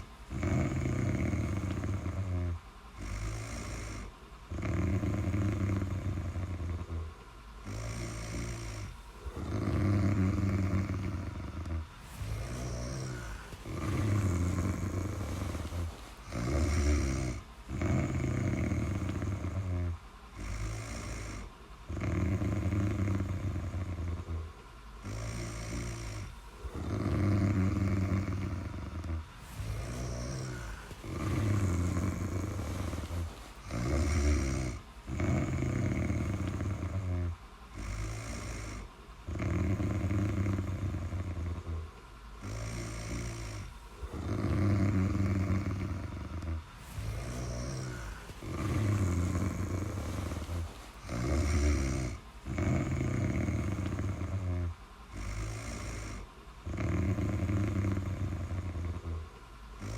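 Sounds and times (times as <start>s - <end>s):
snoring: 0.0s - 59.9s.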